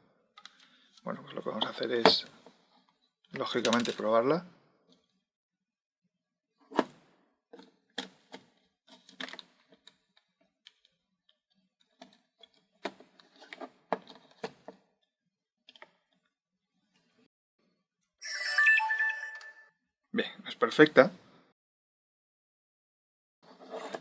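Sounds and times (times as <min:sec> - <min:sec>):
short electronic tones: 0:18.2 - 0:19.7.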